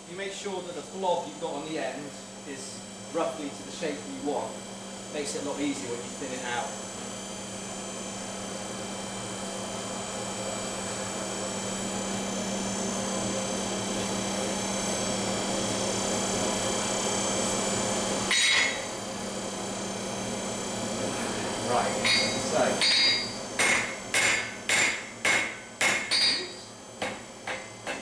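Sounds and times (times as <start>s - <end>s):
metallic hammer strike: 18.3s - 18.9s, 22.0s - 28.0s.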